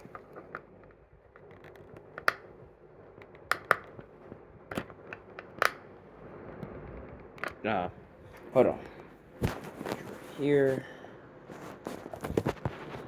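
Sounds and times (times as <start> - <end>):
sharp clicks and taps of handling: 3.2 - 4.1.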